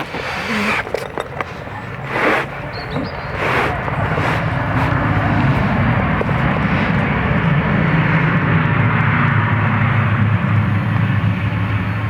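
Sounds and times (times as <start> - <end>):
compressed air rushing into hose: 0.0 - 6.4.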